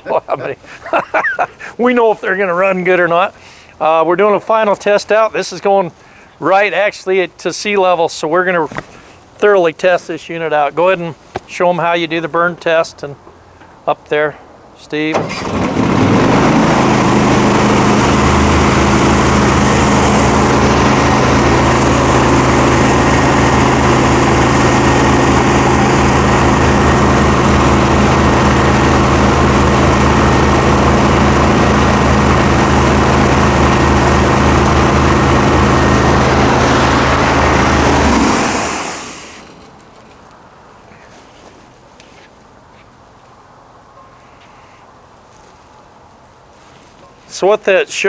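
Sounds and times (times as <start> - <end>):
pressure washer mechanical drone: 15.2 - 39.9.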